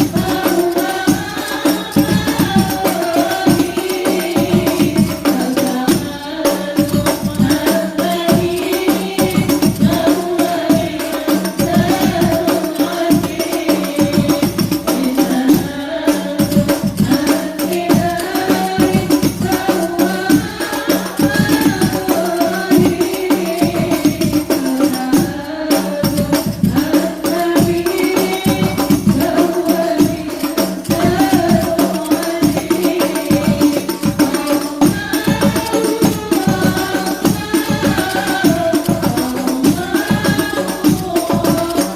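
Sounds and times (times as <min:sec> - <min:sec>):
fast frame drum beats: 0:00.0 - 0:41.9
group singing in unison: 0:00.0 - 0:41.9.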